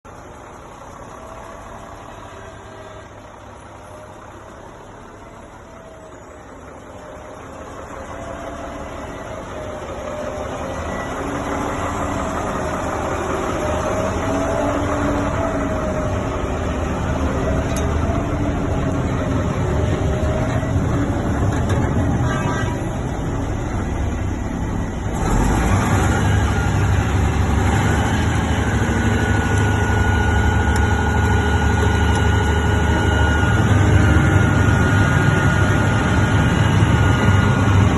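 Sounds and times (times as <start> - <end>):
diesel truck engine running: 0.0 - 37.9.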